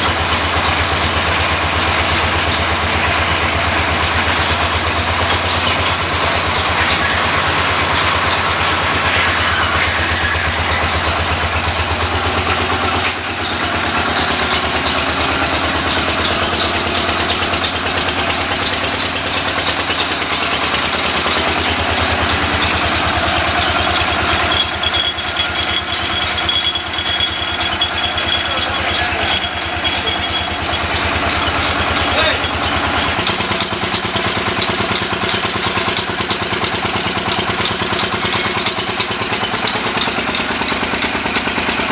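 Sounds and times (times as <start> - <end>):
drilling rig engine drone: 0.0 - 41.9
high steady tones: 20.0 - 41.4.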